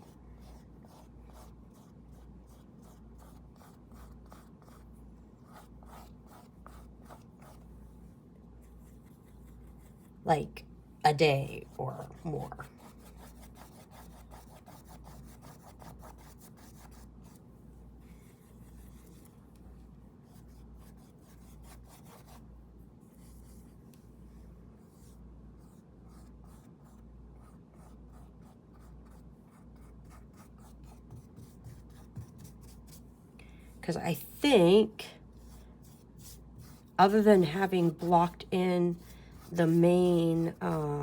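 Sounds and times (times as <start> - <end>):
faint low hum: 0.0 - 41.0
paintbrush scrubbing on canvas: 35.3 - 41.0.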